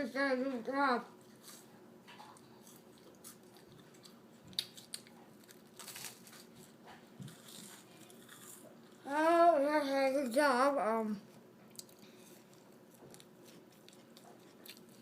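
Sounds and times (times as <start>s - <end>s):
chewing toast: 1.4s - 9.0s, 11.7s - 15.0s.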